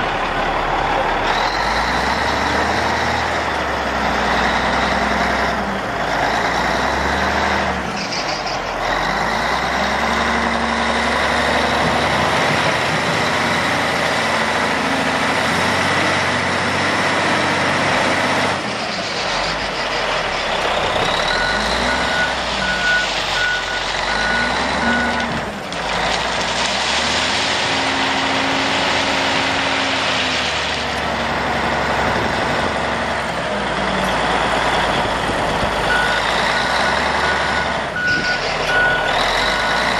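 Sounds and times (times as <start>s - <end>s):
diesel engine revving: 0.0s - 39.9s
reversing alarm beeps: 21.3s - 25.2s, 35.9s - 36.2s, 37.2s - 39.8s.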